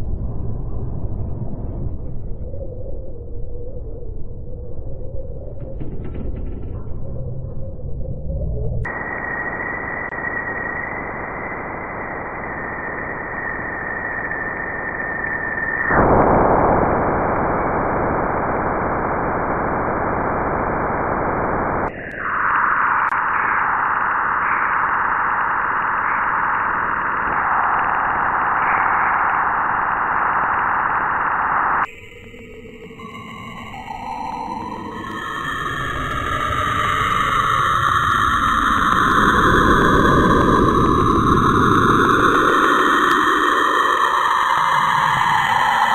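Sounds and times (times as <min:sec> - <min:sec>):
static-like hiss: 0:16.4 - 0:31.9.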